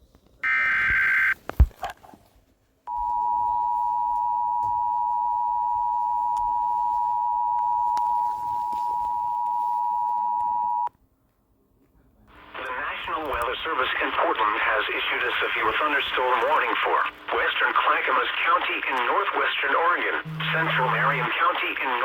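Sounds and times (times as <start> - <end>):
two-tone attention signal beep: 20.3 - 21.3
warbling digital data tones: 20.3 - 21.3.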